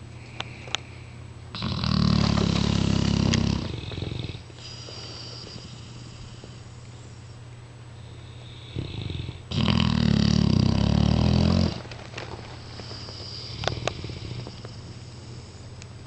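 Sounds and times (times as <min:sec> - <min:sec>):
dog breathing: 0:00.3 - 0:07.3, 0:08.0 - 0:15.7
dog snoring: 0:01.5 - 0:07.2, 0:08.1 - 0:15.6.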